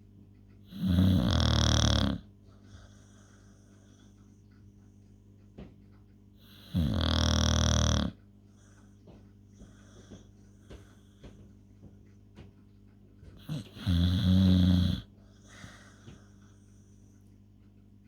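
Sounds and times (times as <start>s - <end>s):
dog snoring: 0.6s - 4.1s, 6.4s - 8.8s, 13.3s - 16.3s
dog breathing faintly: 0.6s - 17.8s.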